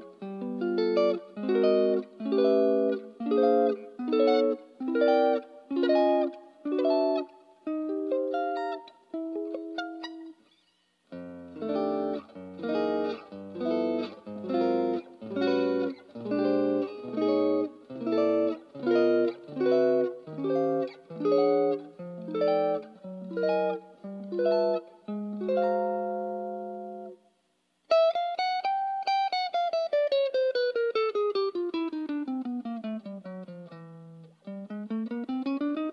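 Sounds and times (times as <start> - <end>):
electric guitar chords: 0.0 - 10.3, 11.1 - 27.2.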